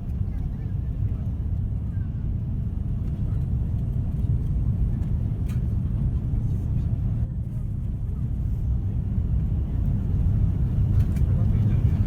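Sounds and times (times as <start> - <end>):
airliner cabin engine rumble: 0.0 - 12.0.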